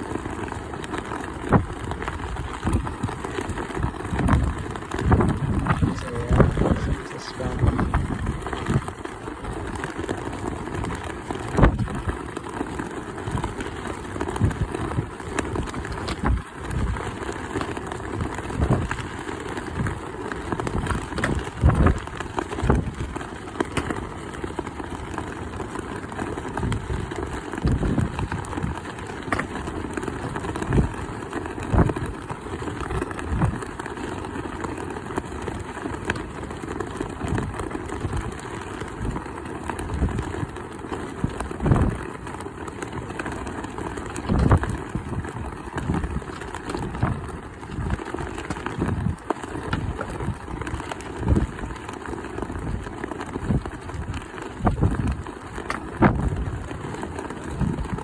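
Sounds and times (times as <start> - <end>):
wind buffeting microphone: 1.5 - 9.8, 10.7 - 12.2, 14.3 - 17.2, 18.2 - 19.0, 20.6 - 23.2, 26.6 - 28.9, 31.6 - 32.2, 41.2 - 42.0, 44.2 - 51.9, 52.5 - 58.0.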